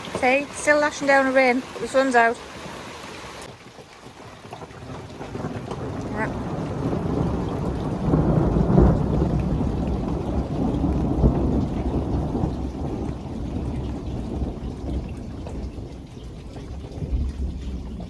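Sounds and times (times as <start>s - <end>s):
heavy rain pouring: 0.0s - 18.0s
thunder rumbling: 4.5s - 18.0s.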